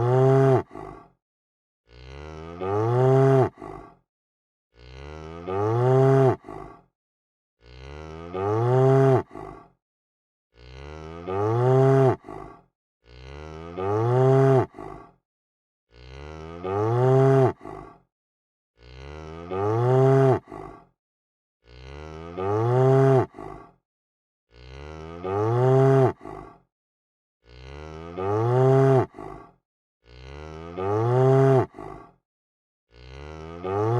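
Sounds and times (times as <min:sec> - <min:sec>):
cow mooing: 0:00.0 - 0:00.6, 0:01.9 - 0:03.6, 0:04.8 - 0:06.4, 0:07.6 - 0:09.3, 0:10.6 - 0:12.3, 0:13.1 - 0:14.7, 0:15.9 - 0:17.6, 0:18.8 - 0:20.6, 0:21.7 - 0:23.3, 0:24.5 - 0:26.2, 0:27.5 - 0:29.1, 0:30.1 - 0:31.8, 0:32.9 - 0:33.9.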